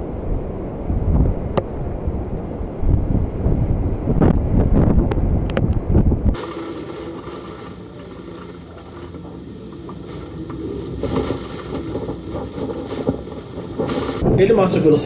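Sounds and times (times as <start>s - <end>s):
strong wind buffeting microphone: 0.0s - 15.0s
low steady hum: 6.4s - 15.0s.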